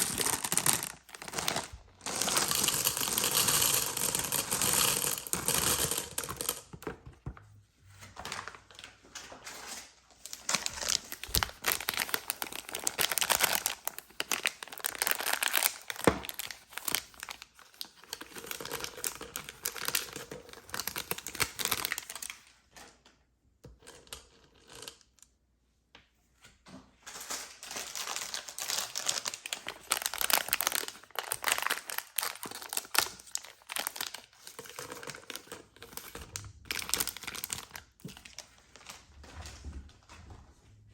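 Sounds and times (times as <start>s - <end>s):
plastic wrappers crinkling and tearing: 0.0s - 6.9s, 8.1s - 22.5s, 27.1s - 39.1s.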